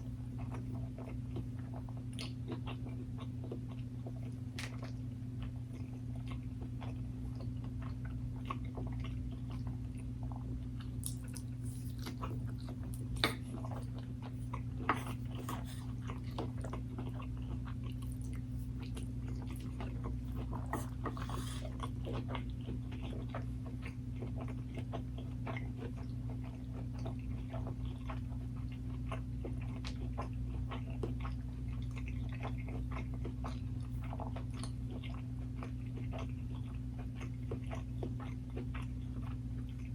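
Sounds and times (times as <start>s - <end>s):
chewing and biting: 0.0s - 39.9s
low steady hum: 0.0s - 39.9s
wet mouth clicks: 11.0s - 13.9s, 14.9s - 16.0s.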